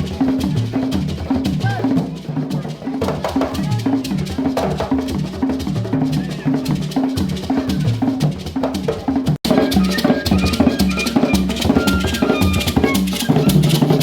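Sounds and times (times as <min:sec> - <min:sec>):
drum strokes: 0:00.0 - 0:14.0
low pitched percussion notes: 0:03.4 - 0:14.0.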